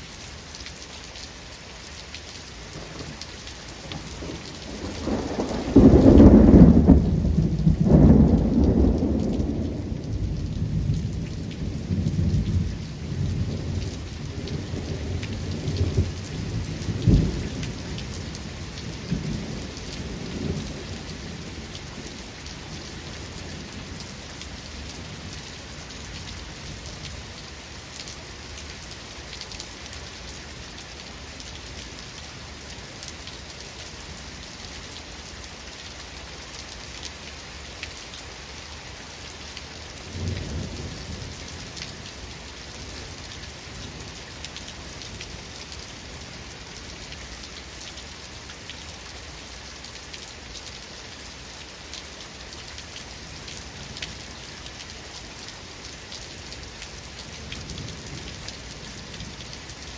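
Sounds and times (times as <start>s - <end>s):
rain hiss: 0.0s - 59.9s
thunder rumbling: 4.0s - 21.7s.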